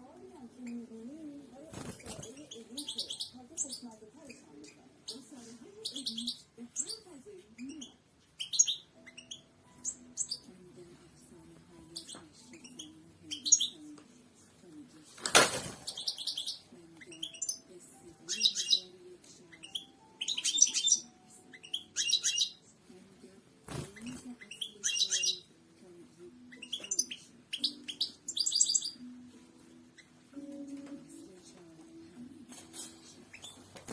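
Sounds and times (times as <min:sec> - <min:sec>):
goldfinch twittering song: 0:01.8 - 0:07.0, 0:07.6 - 0:10.5, 0:11.9 - 0:13.8, 0:15.9 - 0:18.9, 0:19.5 - 0:22.6, 0:23.6 - 0:25.6, 0:26.4 - 0:31.3, 0:32.6 - 0:33.8.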